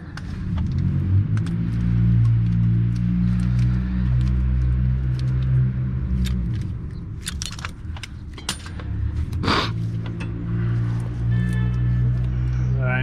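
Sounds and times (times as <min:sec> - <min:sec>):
metal tools clinking and rattling: 0:07.2 - 0:09.0, 0:10.0 - 0:11.8.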